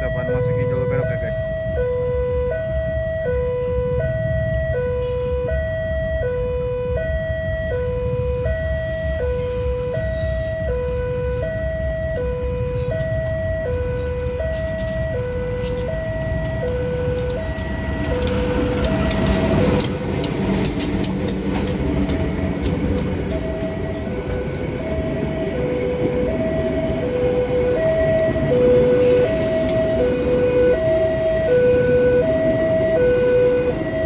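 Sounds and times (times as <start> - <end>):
train passing rumble: 0.0 - 34.0
two-tone crossing warning siren: 0.0 - 34.0
wheel clicks over rail joints: 12.9 - 26.4.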